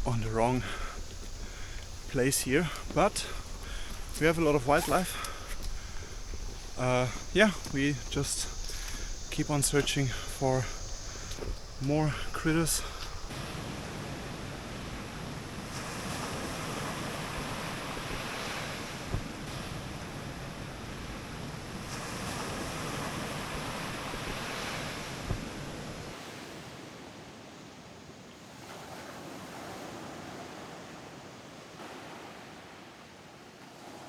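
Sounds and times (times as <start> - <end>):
rushing outdoor noise: 0.0 - 26.9.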